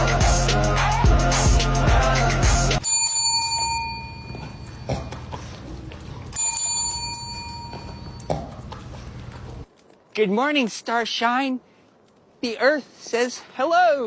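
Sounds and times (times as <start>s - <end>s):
small bell ringing: 2.8s - 5.3s, 6.3s - 8.3s.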